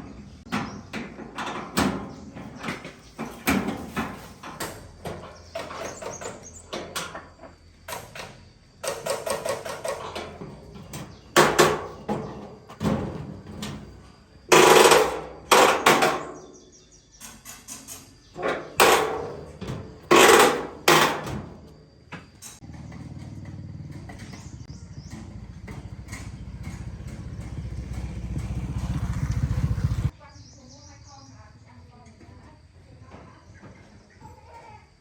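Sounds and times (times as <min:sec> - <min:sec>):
metal parts and tools clattering: 0:17.2 - 0:21.4.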